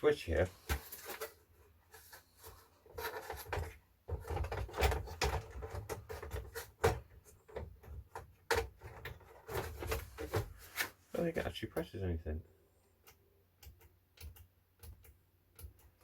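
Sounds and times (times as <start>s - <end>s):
plastic parts clicking and knocking: 2.8s - 10.5s.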